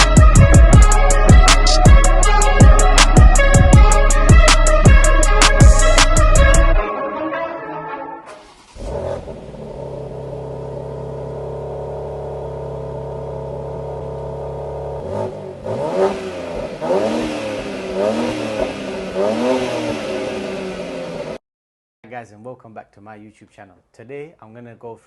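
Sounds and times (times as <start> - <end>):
car engine idling and revving: 8.3 - 21.4.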